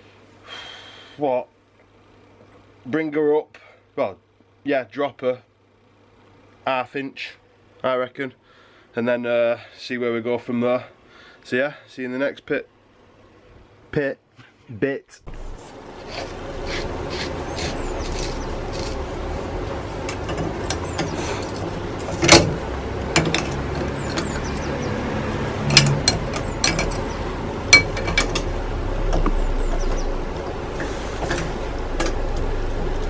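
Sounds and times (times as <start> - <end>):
steady low hum: 0.0 - 33.0
metallic clicks of hand tools: 20.1 - 24.7, 25.6 - 28.5.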